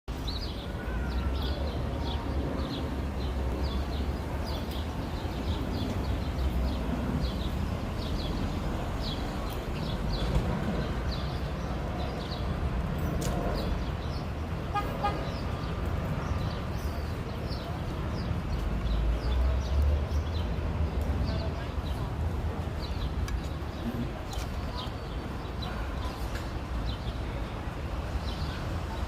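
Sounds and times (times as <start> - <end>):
distant jet airliner rumble: 0.6 - 19.2.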